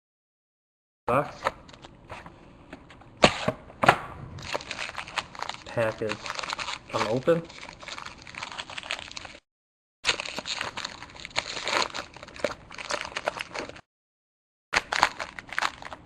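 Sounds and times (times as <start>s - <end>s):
wrapper tearing and crinkling: 4.4s - 9.4s, 10.0s - 13.9s, 14.8s - 16.0s.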